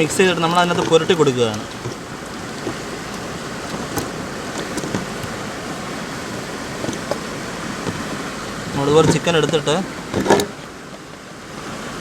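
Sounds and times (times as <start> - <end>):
steady rushing background noise: 0.0 - 12.0.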